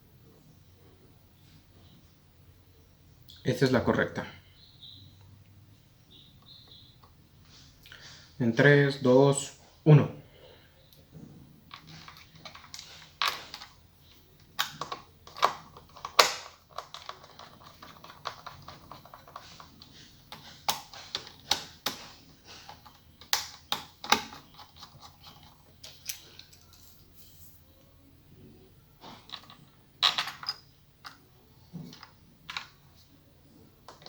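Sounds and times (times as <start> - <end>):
small hard parts clicking: 11.7 - 26.9.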